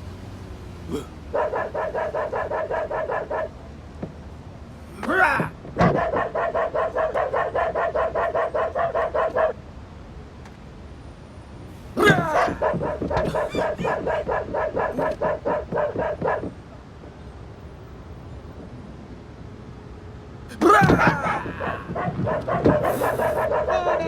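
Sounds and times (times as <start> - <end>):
cartoon dog barking: 0.9 - 3.6, 5.0 - 9.6, 12.0 - 16.6, 20.5 - 24.0
cartoon dog falling cry: 12.0 - 14.2, 20.5 - 23.8.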